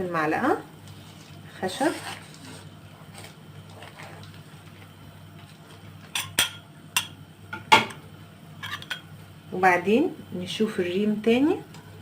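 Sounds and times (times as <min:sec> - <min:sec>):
low steady hum: 0:00.0 - 0:12.0
wooden spoon stirring in pot: 0:00.8 - 0:05.9
spoon clacking against pot: 0:06.2 - 0:07.2.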